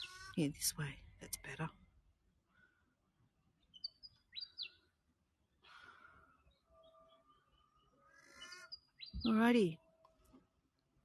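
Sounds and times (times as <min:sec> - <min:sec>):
faint bird calls: 0:05.6 - 0:09.9.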